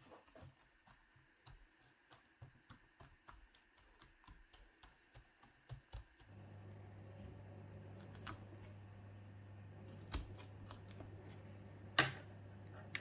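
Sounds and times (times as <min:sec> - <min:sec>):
low steady hum: 0:06.2 - 0:13.0.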